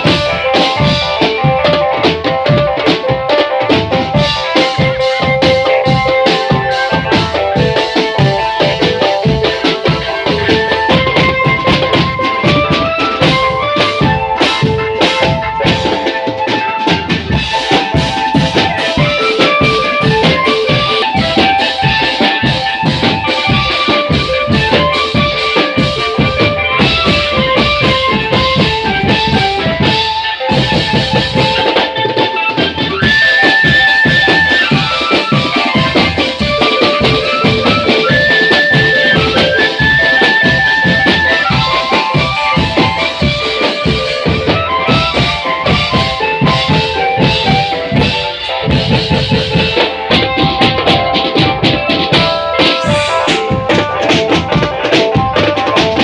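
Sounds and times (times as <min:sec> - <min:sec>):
marching drum band playing: 0:00.0 - 0:56.0
warbling high note: 0:32.9 - 0:43.0, 0:52.0 - 0:54.6.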